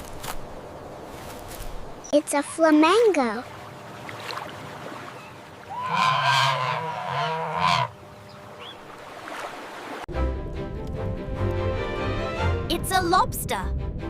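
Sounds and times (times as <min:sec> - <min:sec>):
flamingo honking call: 0:05.2 - 0:08.8.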